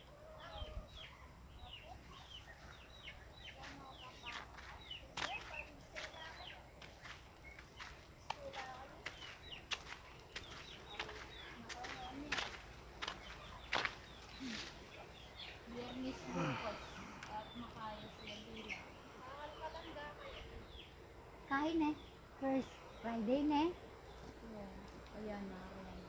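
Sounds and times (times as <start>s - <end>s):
chicks peeping: 0.5s - 15.9s.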